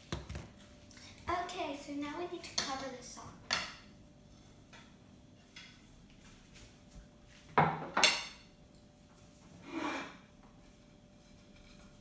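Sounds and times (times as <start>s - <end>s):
dishes clattering: 7.6s - 8.5s
dishes scraping: 9.5s - 10.3s.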